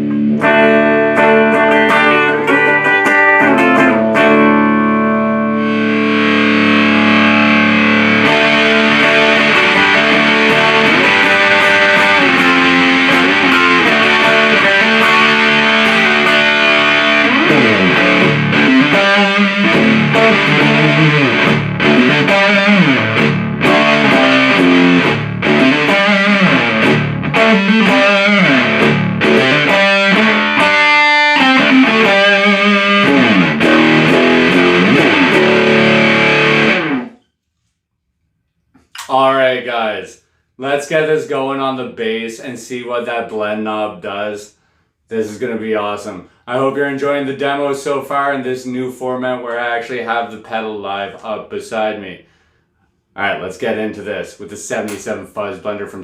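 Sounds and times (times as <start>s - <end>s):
distorted electric guitar: 0.0s - 37.2s.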